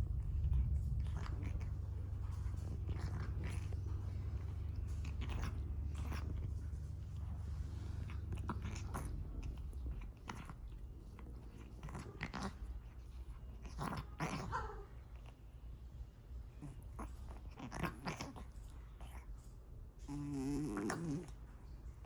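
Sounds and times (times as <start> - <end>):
low hum: 0.0 - 17.6
cat licking and nibbling: 0.0 - 22.0.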